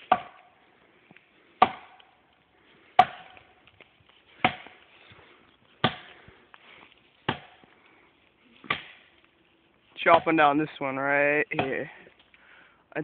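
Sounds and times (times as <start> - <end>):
axe chopping into tree trunk: 0.0 - 0.5, 1.6 - 2.0, 3.0 - 3.5, 4.4 - 4.8, 5.8 - 6.2, 7.2 - 7.7, 8.6 - 9.1, 11.5 - 12.0.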